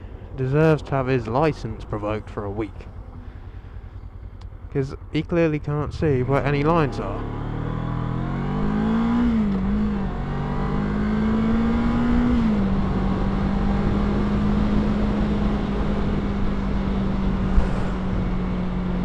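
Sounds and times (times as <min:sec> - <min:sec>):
motorcycle engine idling: 0:00.0 - 0:08.9.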